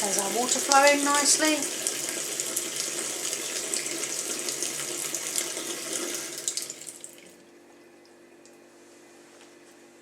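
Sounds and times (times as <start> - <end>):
tap water running into sink: 0.0 - 7.4.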